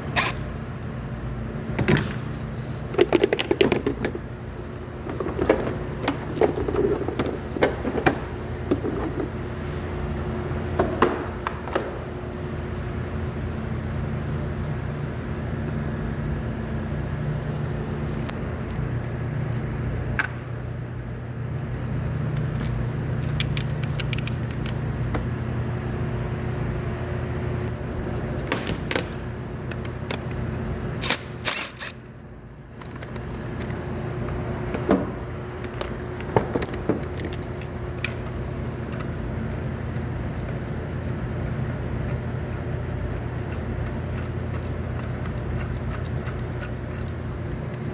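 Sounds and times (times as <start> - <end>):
sharp clicks and rattles: 35.6 - 47.9.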